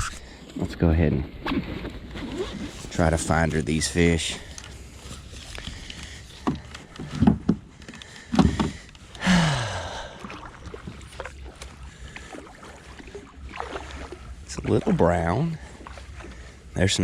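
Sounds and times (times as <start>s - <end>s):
kayak thumps: 6.4s - 8.9s.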